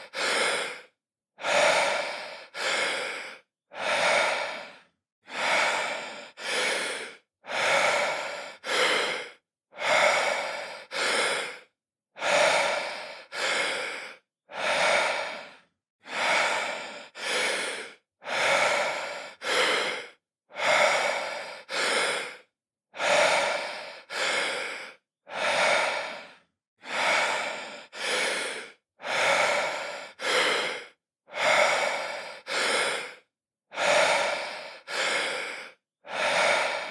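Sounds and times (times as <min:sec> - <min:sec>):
man breathing deeply: 0:00.0 - 0:36.9.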